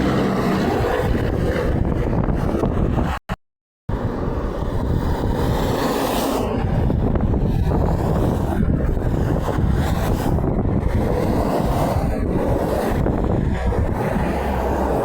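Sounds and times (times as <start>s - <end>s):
road traffic rumble: 0.0s - 2.5s
wind buffeting microphone: 0.0s - 3.3s, 3.9s - 15.0s.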